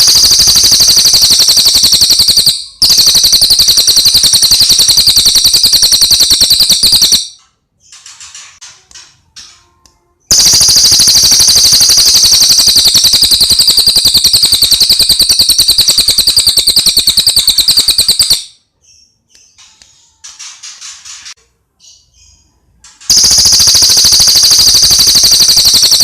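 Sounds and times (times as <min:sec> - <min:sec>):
bird rattling trill: 0:00.0 - 0:07.4, 0:10.3 - 0:18.5, 0:23.1 - 0:26.0.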